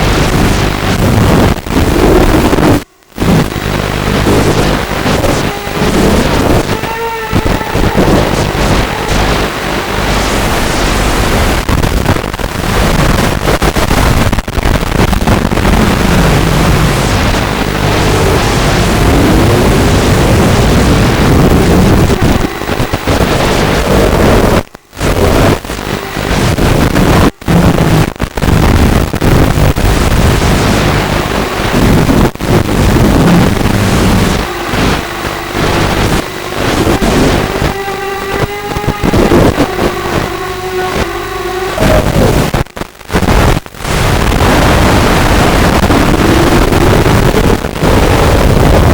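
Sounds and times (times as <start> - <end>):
wind rush on microphone: 0.0 - 48.9
quadcopter motors whining: 4.2 - 11.3, 16.1 - 27.8, 30.2 - 42.8.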